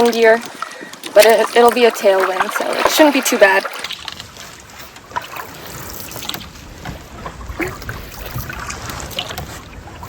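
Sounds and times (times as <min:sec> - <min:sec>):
paddle strokes splashing: 0:00.0 - 0:10.0
wind rumble on microphone: 0:04.0 - 0:10.0.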